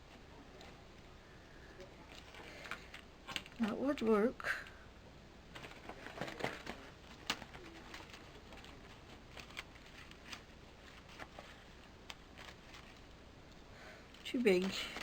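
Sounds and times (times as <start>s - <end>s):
paper and card rustling: 5.5s - 13.2s, 14.1s - 15.0s.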